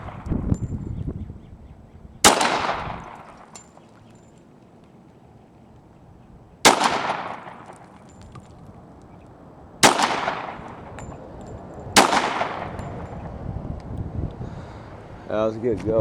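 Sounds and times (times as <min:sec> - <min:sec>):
handgun shots echoing: 0:02.2 - 0:04.1, 0:06.6 - 0:09.2, 0:09.8 - 0:13.3.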